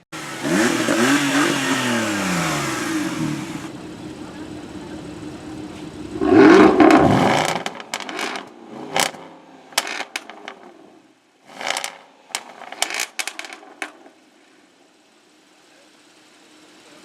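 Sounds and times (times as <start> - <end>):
sports car engine revving: 0.2 - 14.9
exhaust pops and crackles: 5.7 - 10.9, 11.5 - 14.2.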